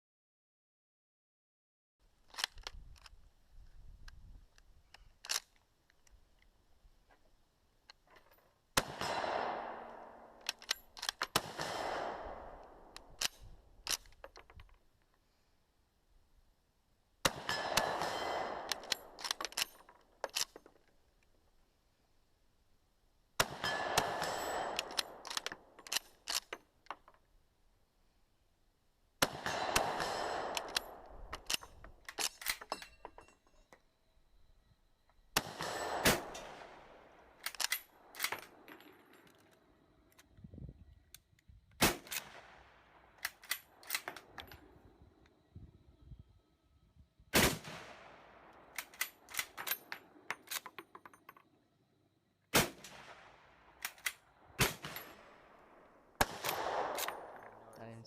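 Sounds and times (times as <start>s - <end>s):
gunfire bursts: 8.8s - 10.4s, 11.2s - 13.0s, 17.2s - 19.3s, 23.4s - 25.5s, 29.2s - 31.0s, 35.4s - 37.4s, 41.8s - 42.7s, 47.4s - 49.6s, 52.5s - 54.0s, 54.6s - 55.5s, 56.2s - 57.6s
metallic clinks: 30.5s - 33.9s, 37.4s - 39.6s, 48.8s - 51.5s.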